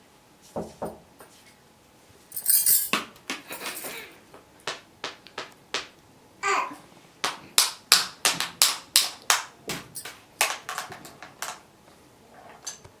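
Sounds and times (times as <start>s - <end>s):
hands clapping: 4.6s - 6.0s, 7.2s - 11.6s.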